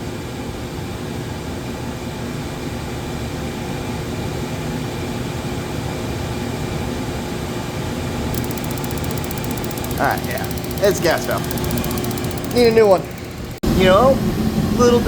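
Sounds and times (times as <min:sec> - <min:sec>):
furnace motor whirring hum: 0:08.4 - 0:15.0.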